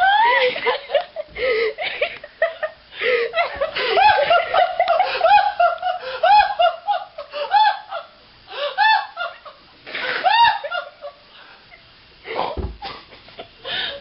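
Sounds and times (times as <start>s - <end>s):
high-pitched squealing laughter: 3.4s - 11.2s.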